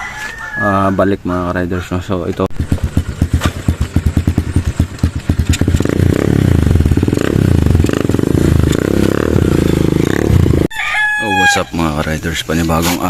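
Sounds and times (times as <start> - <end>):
motorcycle engine revving: 2.5 - 10.7.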